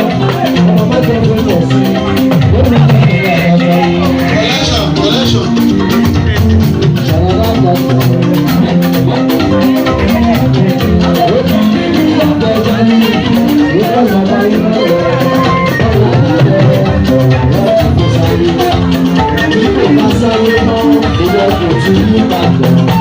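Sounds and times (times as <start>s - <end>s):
drums beating fast: 0.0s - 23.0s
live band music: 0.0s - 23.0s.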